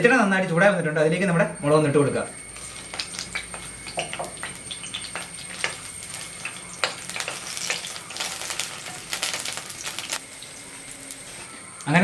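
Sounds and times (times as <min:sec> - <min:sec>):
chillies sizzling in oil: 0:01.8 - 0:12.0
crackles and pops: 0:02.6 - 0:12.0.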